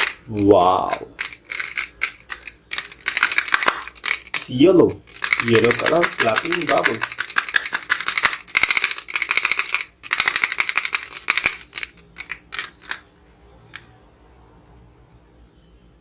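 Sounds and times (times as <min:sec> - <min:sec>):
plastic clapping toy clacking: 0:00.0 - 0:04.4, 0:05.0 - 0:13.0.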